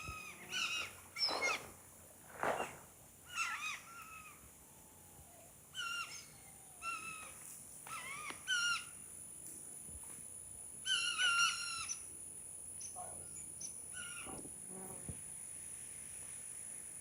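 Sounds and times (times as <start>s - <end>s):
bird calling: 0.0s - 1.8s, 2.4s - 4.5s, 5.2s - 9.0s, 10.8s - 12.1s, 12.8s - 14.4s.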